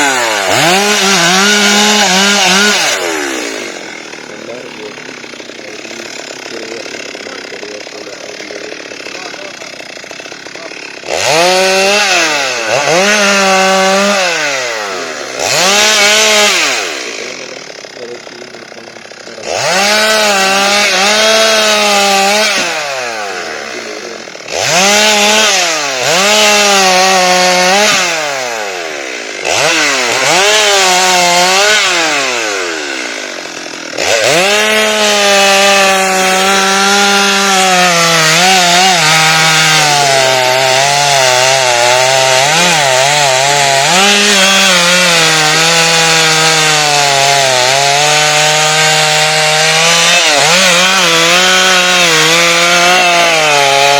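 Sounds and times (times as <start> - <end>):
chainsaw cutting wood: 0.0 - 53.9.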